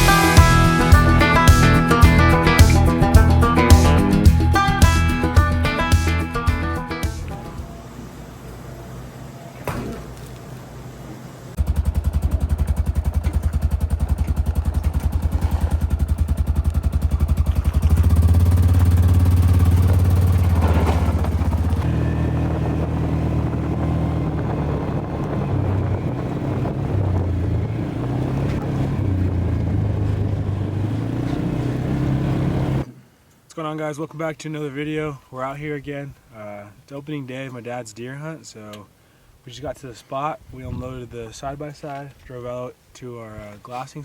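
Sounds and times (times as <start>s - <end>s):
utility vehicle engine running: 11.5s - 32.8s.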